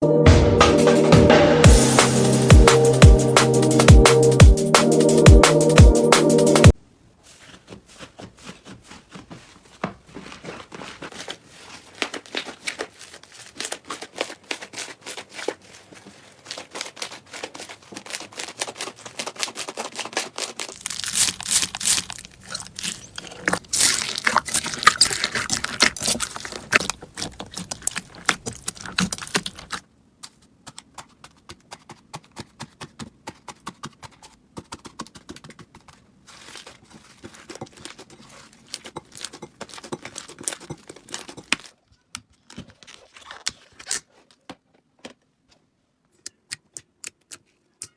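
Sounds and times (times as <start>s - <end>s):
slime squished by hand: 10.9s - 29.8s.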